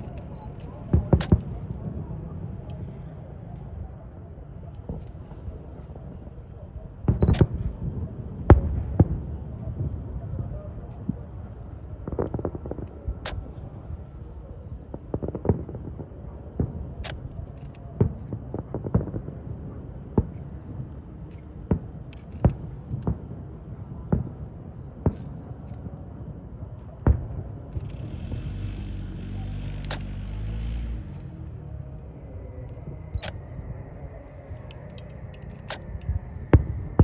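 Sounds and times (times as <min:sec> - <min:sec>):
fireworks bangs: 0:18.0 - 0:20.8
low steady drone: 0:18.3 - 0:37.0.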